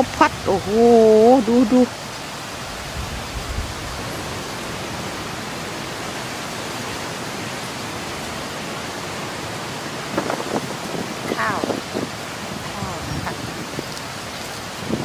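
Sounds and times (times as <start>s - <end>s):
wind gusts buffeting microphone: 0.0s - 15.0s
wind rushing: 10.0s - 14.0s, 14.7s - 15.0s.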